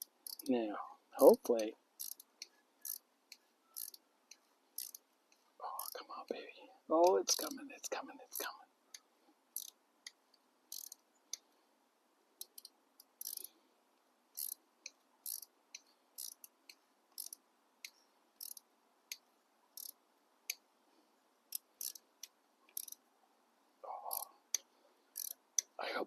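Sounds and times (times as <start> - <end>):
ratchet wrench clicking: 0.0 - 0.5, 2.0 - 3.0, 3.8 - 4.0, 4.8 - 5.0, 9.6 - 9.8, 10.7 - 11.0, 12.4 - 13.5, 14.4 - 14.6, 15.2 - 15.5, 16.2 - 16.5, 17.2 - 17.4, 18.4 - 18.6, 19.8 - 20.0, 21.5 - 22.0, 22.7 - 23.0, 24.1 - 24.6, 25.2 - 25.7.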